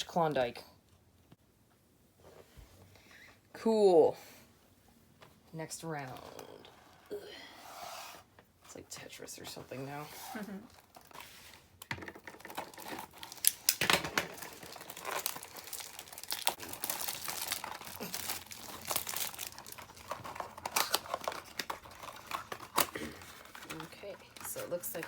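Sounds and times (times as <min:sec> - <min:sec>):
plastic and cardboard crinkling: 0:09.8 - 0:25.0
packaging tearing: 0:12.2 - 0:24.4.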